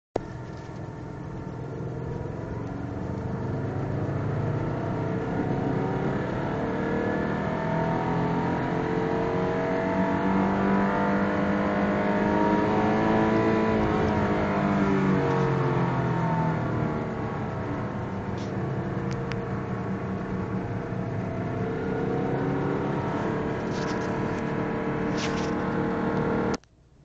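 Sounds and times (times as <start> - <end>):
car engine revving: 0.4 - 26.6.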